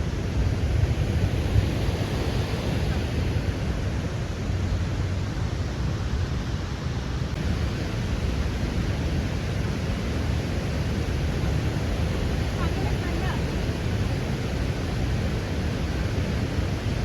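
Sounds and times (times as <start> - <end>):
waterfall rushing: 7.3 - 17.0.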